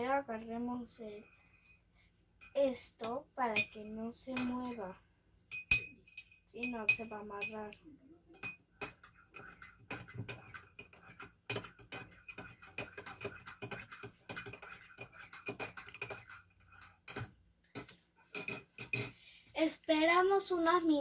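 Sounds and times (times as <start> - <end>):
spoon clinking in glass: 5.5 - 7.7, 8.3 - 19.2.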